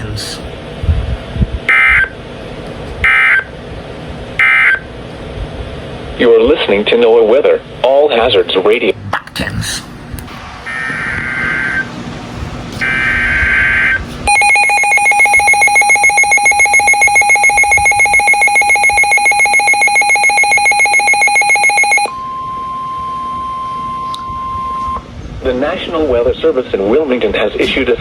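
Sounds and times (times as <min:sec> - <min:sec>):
buzzing pulsed alert tone: 0:12.8 - 0:25.0
steady single-pitch alarm tone: 0:12.8 - 0:25.1
warbling digital data bursts: 0:14.3 - 0:22.1.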